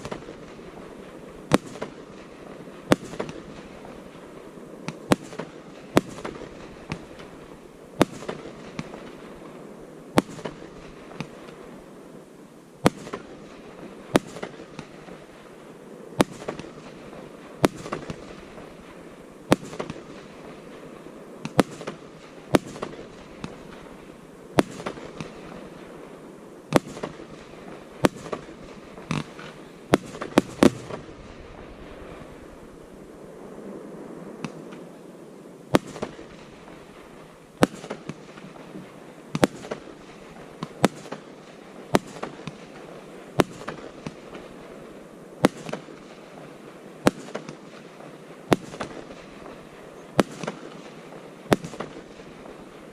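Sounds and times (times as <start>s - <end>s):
firework shell bursts: 29.1s - 31.1s.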